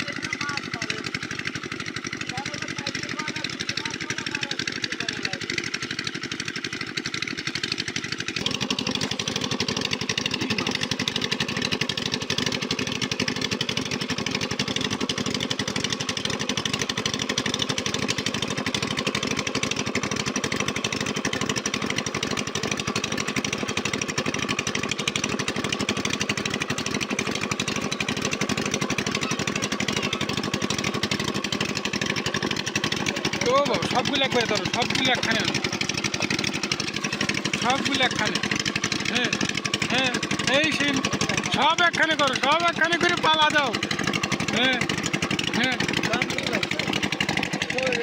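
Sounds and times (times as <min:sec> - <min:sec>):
small engine running: 0:00.0 - 0:48.0.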